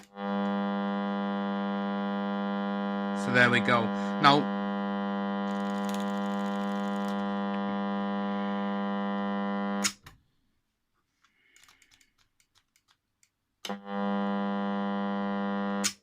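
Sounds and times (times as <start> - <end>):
alarm clock buzzer: 0.0 - 9.8, 13.7 - 16.0.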